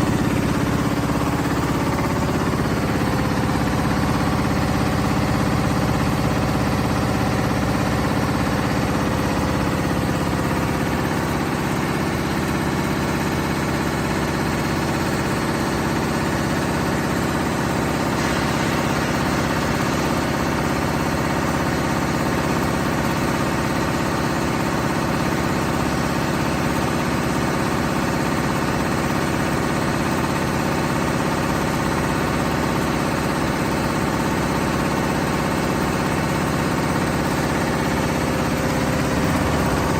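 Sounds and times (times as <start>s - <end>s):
machine humming with fast pulse: 0.0s - 15.9s, 17.2s - 22.6s, 34.8s - 39.9s.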